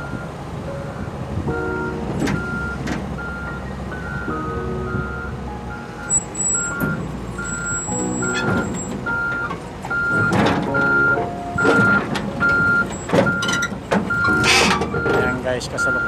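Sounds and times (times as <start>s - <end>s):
reversing alarm beeping: 0.0s - 0.4s, 1.5s - 16.0s
diesel engine running: 0.0s - 16.0s.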